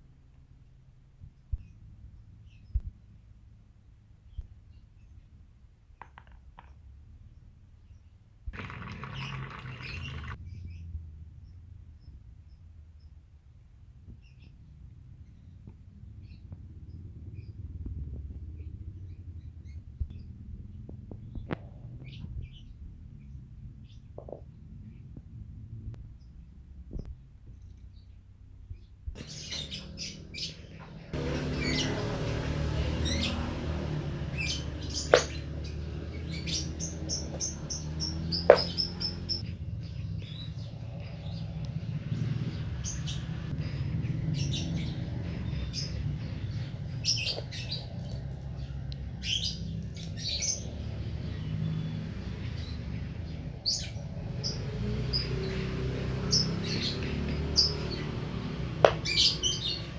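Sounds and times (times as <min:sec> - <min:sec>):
pet bird chirping and tweeting: 0:28.7 - 0:32.1, 0:34.3 - 0:40.6, 0:56.3 - 0:59.9.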